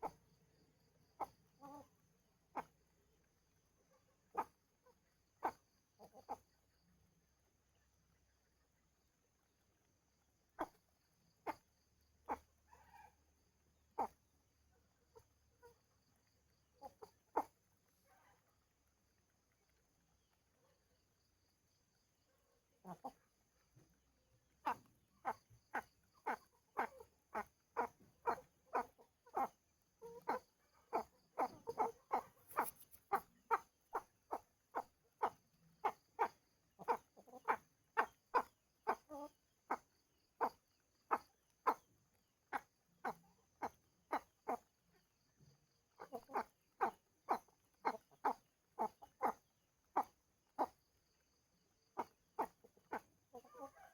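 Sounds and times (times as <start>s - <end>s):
animal calling: 0.0s - 0.4s, 1.1s - 2.9s, 4.3s - 6.6s, 10.6s - 13.3s, 13.9s - 14.3s, 15.0s - 18.6s, 22.8s - 53.9s.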